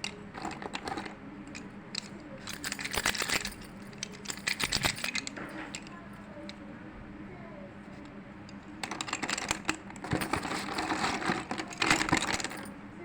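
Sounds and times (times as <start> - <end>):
slate pencils crumbling: 0.3 - 5.9, 8.8 - 12.7.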